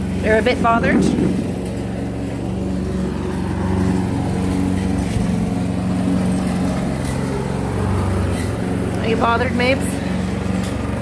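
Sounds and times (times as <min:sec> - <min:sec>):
lawnmower engine running: 0:00.0 - 0:11.0.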